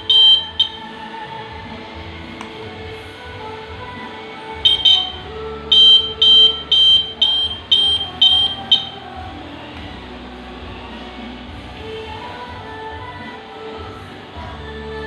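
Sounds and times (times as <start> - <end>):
alarm buzzer beeping: 0.0 - 0.8, 4.6 - 9.0
background music: 0.0 - 15.0.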